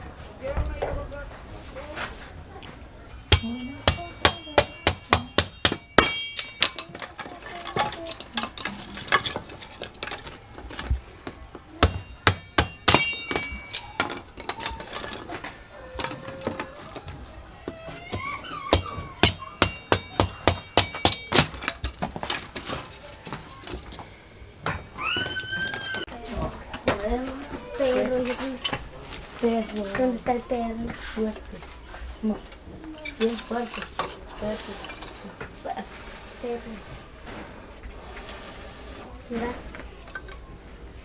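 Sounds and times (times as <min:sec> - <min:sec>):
hammering with metallic ring: 0:03.2 - 0:25.0.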